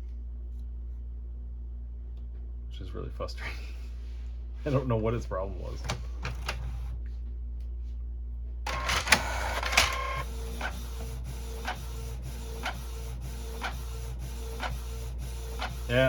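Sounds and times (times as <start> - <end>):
printer clacking taking up paper: 5.8 - 6.7, 8.7 - 16.0
inkjet printer printing: 5.8 - 7.0, 8.7 - 16.0.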